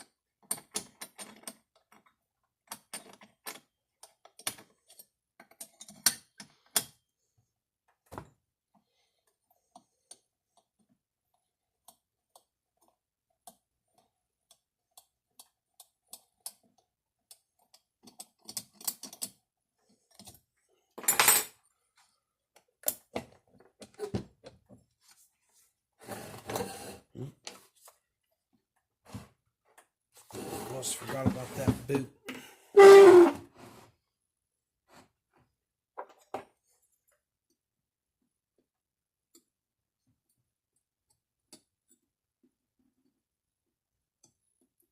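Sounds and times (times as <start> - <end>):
metal parts clicking and tapping: 0.4 - 7.0, 11.8 - 19.4
rustling scrape: 30.2 - 31.9.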